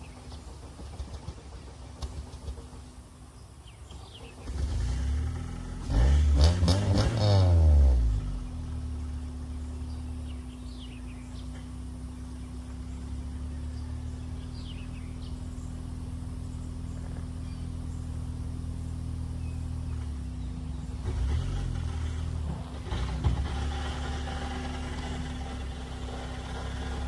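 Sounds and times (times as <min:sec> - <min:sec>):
car engine idling: 0:00.0 - 0:27.0
bird chirps: 0:02.2 - 0:04.8, 0:08.1 - 0:21.8.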